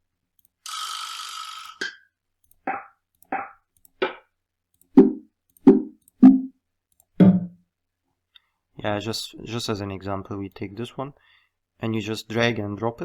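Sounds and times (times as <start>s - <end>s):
drum hits: 5.0s - 6.5s, 7.2s - 7.6s.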